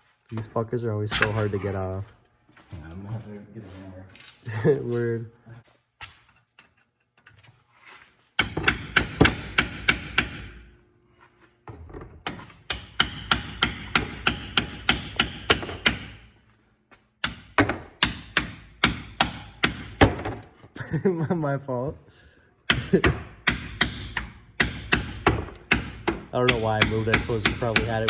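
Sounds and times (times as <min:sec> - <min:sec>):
hammer striking metal part: 0:08.4 - 0:10.6, 0:12.2 - 0:16.2.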